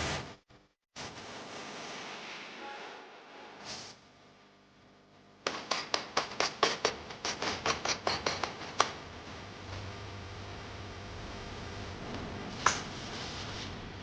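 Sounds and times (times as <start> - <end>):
knife chopping on cutting board: 5.5 - 9.0.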